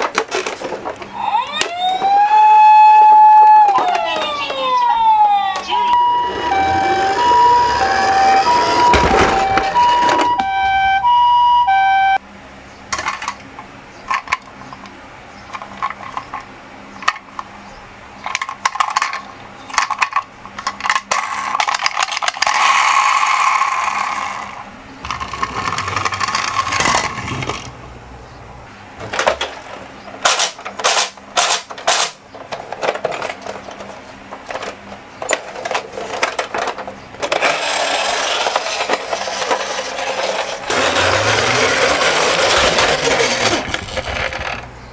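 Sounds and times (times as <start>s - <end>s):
two-tone siren: 1.2s - 12.2s
toy cars rattling down a track: 18.2s - 27.7s, 34.5s - 44.7s.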